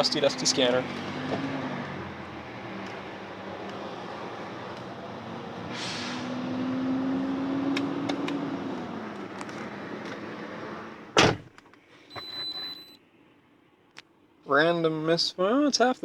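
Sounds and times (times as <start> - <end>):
car engine idling: 0.0 - 11.4
car door slamming: 9.2 - 11.5
short high beep: 12.1 - 13.0.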